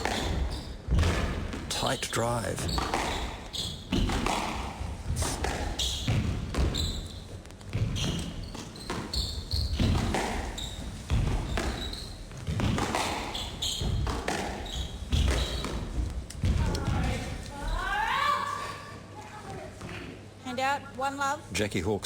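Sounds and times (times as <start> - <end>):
shoe squeaks: 0.0 - 0.8, 1.8 - 4.2, 5.1 - 16.1
squash ball knocks: 2.7 - 6.8, 7.7 - 17.4.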